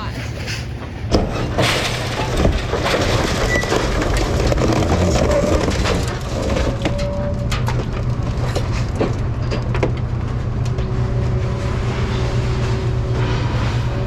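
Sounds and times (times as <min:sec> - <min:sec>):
crane engine running: 0:00.0 - 0:14.0
metal crunching: 0:00.2 - 0:14.0.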